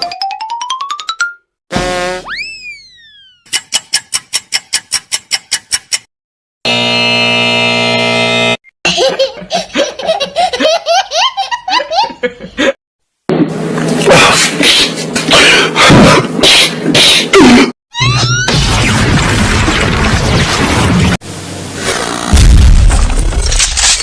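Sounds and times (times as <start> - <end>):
buzzer tone: 1.7 - 2.4, 6.6 - 8.7
laughing sound effect: 8.9 - 12.8.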